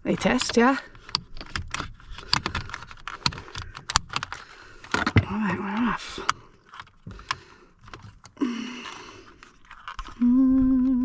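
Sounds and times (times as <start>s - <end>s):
tools clicking and scraping: 0.0s - 10.2s
person humming: 10.2s - 11.0s.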